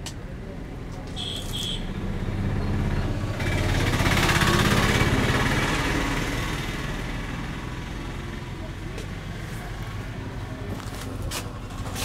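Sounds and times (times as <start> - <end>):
vehicle engine running: 1.9 - 12.0.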